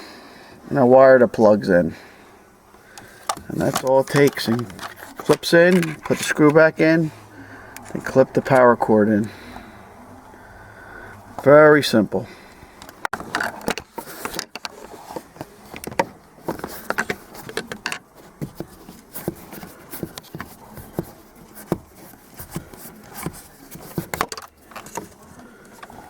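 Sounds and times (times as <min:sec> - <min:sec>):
screwdriver clicks and scrapes: 0:03.0 - 0:06.6.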